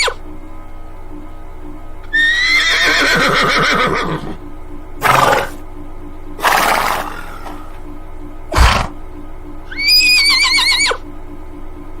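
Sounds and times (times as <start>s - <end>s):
horse whinnying: 2.2s - 4.4s, 9.7s - 11.0s
horse snorting: 3.7s - 4.4s, 5.0s - 5.6s, 6.4s - 7.7s, 8.5s - 9.0s.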